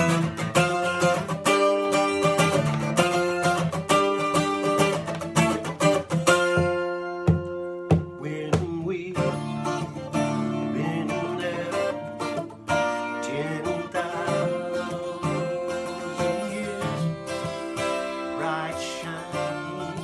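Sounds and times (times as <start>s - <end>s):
guitar playing a slow hymn: 0.0s - 20.0s
person singing: 7.9s - 20.0s.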